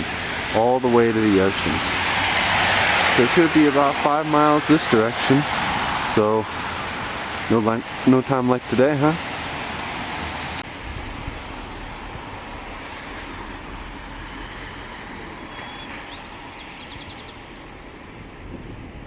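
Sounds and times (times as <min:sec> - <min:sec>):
street traffic in rain: 0:00.0 - 0:19.0
rising chirps: 0:10.5 - 0:18.4.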